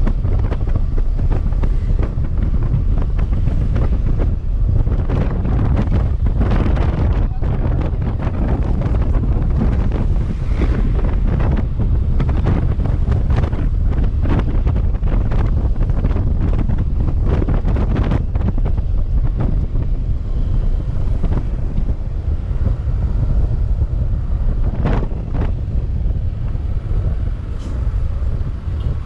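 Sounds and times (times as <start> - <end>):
wind buffeting microphone: 0.0 - 29.0.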